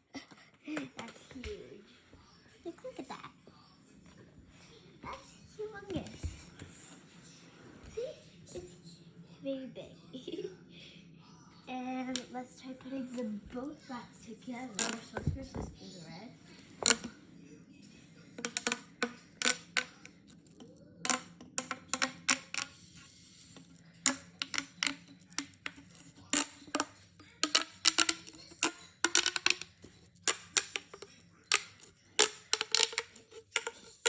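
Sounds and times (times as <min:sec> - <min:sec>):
plastic tube toys snapping: 0:16.8 - 0:17.1, 0:18.4 - 0:20.4, 0:21.1 - 0:22.7, 0:23.5 - 0:34.0.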